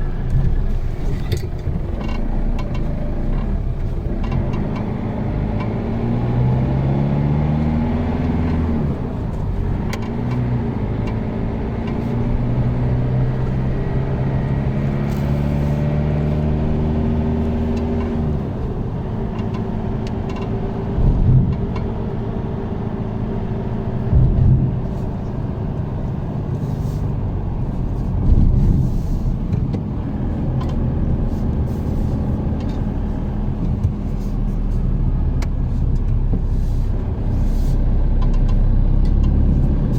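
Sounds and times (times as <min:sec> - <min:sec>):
car engine driving: 0:00.0 - 0:39.9
short thumps: 0:27.9 - 0:29.9.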